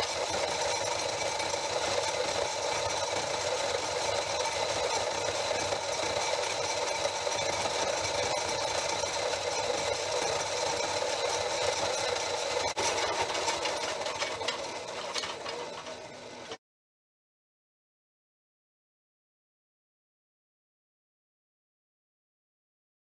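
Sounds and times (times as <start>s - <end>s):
machine running with light rattle: 0.0s - 16.6s.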